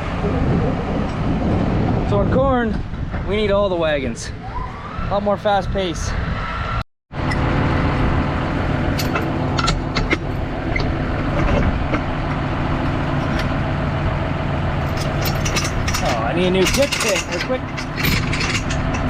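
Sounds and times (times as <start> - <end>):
diesel engine running: 7.1 - 19.0
light clicks and rattles: 14.9 - 19.0.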